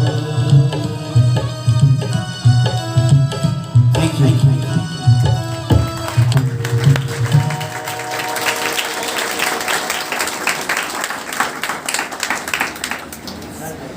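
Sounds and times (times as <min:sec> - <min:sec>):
held chord: 0:00.3 - 0:10.9
audience applause: 0:05.7 - 0:13.6.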